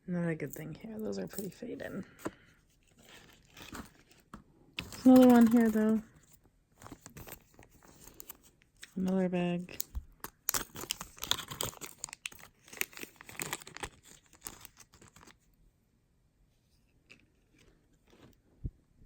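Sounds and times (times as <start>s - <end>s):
plastic bag crinkling and tearing: 6.9s - 15.4s.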